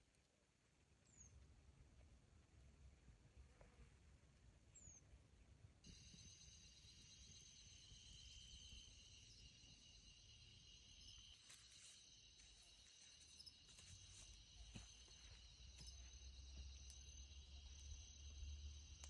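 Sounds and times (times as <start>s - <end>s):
crickets chirping: 5.8s - 19.0s.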